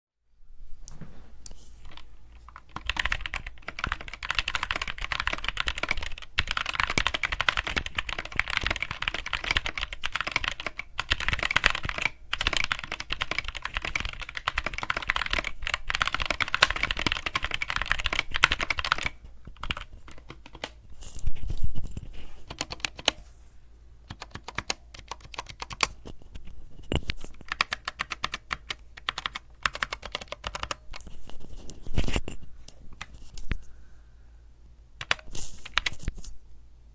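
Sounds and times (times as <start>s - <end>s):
mechanical keyboard typing: 1.9s - 20.8s, 22.5s - 23.2s, 24.1s - 26.0s, 27.4s - 31.1s, 35.0s - 36.1s.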